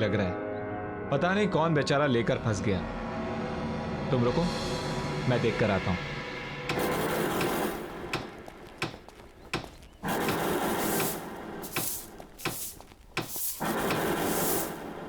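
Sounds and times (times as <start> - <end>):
sharp knocks: 6.7 - 14.4
scraping and rasping: 6.7 - 15.0.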